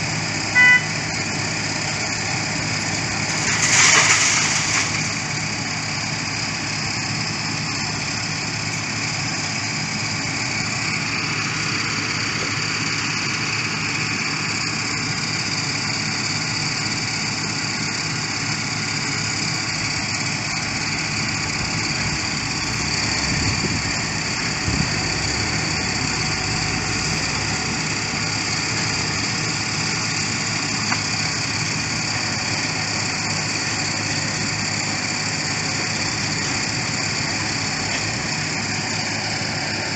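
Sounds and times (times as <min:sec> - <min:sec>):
construction machine engine running: 0:00.0 - 0:39.9.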